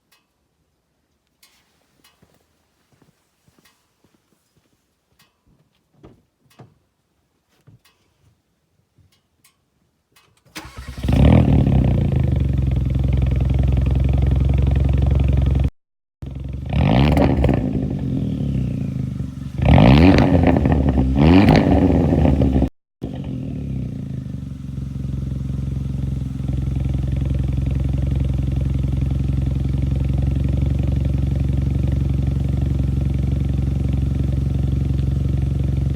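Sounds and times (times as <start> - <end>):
car engine starting and idling: 10.5 - 35.9
engine revving: 10.6 - 35.9.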